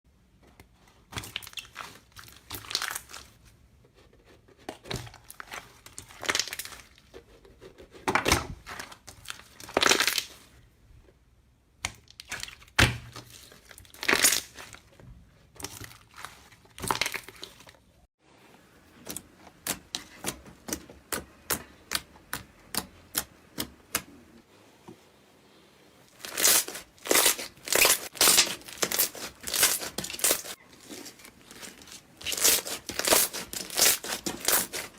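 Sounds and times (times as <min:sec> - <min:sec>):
slime squelching and popping: 0:26.2 - 0:34.9.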